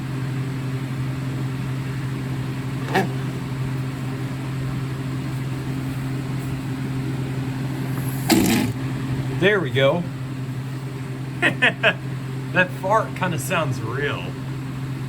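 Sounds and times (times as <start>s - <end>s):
low mechanical hum: 0.0s - 15.0s
brief sharp sound: 8.1s - 8.8s.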